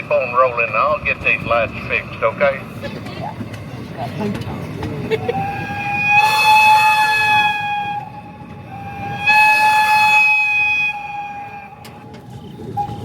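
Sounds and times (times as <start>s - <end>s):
train rumbling: 0.0s - 13.0s
train whistle blasts: 5.3s - 12.0s.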